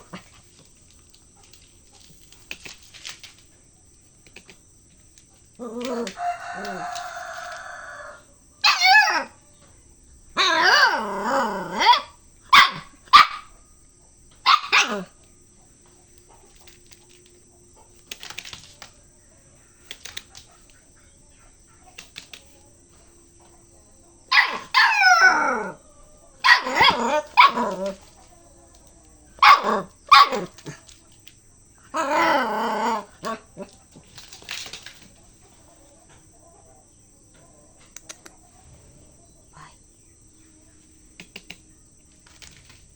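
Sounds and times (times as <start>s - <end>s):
puppy barking and yipping: 11.8s - 13.6s, 14.4s - 15.1s, 24.3s - 25.5s, 26.4s - 28.0s, 29.4s - 30.6s.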